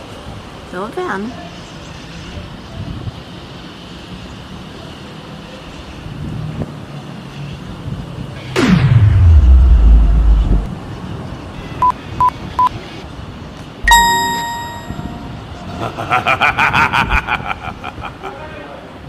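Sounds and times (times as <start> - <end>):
short electronic beeps: 13.9 - 15.3
bright ding: 13.9 - 15.4.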